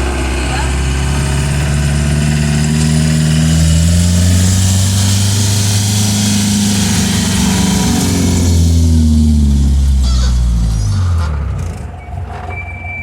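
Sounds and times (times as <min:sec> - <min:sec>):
car engine running: 0:00.0 - 0:13.0
steady rushing hiss: 0:01.8 - 0:10.9.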